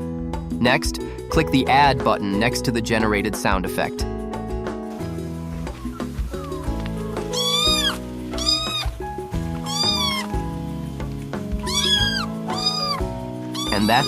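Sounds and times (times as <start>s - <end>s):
background music: 0.0s - 14.0s
kittens meowing: 5.6s - 10.6s, 11.5s - 14.0s.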